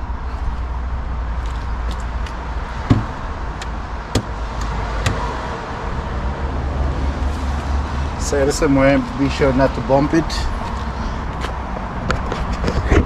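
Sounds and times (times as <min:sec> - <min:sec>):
dull thud: 0:02.8 - 0:03.2
knocks and clicks handling door panel: 0:02.9 - 0:03.1.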